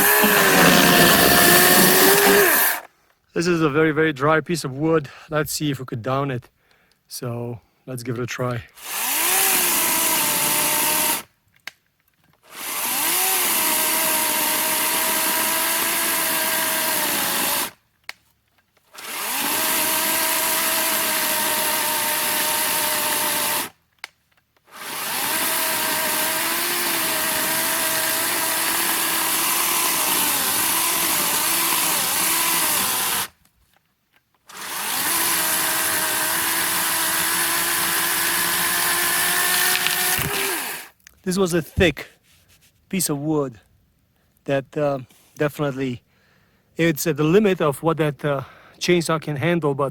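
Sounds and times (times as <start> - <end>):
electric chainsaw cutting log: 0.0 - 2.9, 8.8 - 11.3, 12.4 - 17.8, 18.9 - 23.8, 24.6 - 33.4, 34.5 - 41.0.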